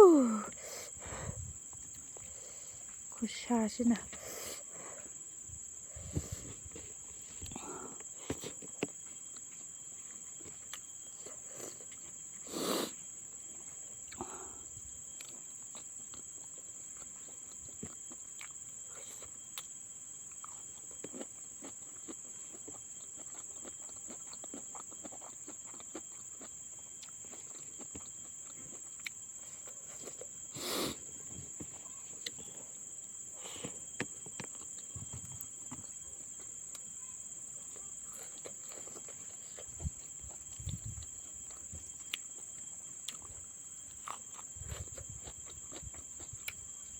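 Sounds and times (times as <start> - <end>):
high insect drone: 0.0 - 46.9
person chewing with mouth clicks: 20.3 - 30.3, 43.0 - 46.7.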